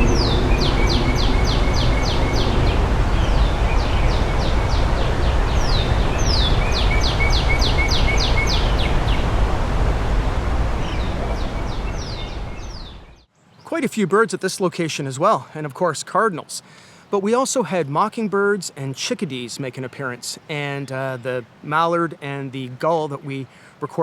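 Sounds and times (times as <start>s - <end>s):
creek rushing: 0.0s - 12.7s.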